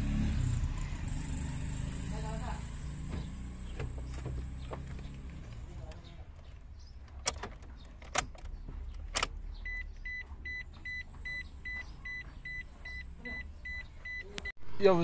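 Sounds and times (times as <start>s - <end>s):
car warning chime beeping: 9.6s - 14.6s.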